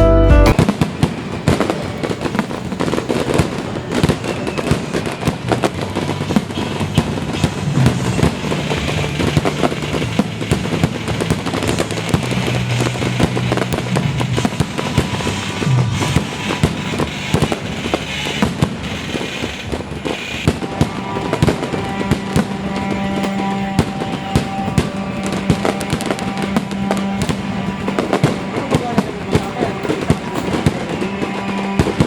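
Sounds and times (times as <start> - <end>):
music playing: 0.0 - 0.8, 20.6 - 32.0
fireworks bursting and crackling: 0.4 - 32.0.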